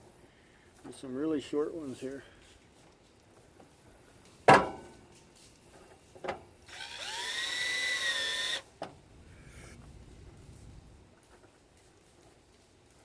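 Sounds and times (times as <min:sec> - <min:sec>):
power drill driving screw: 0:06.7 - 0:08.7.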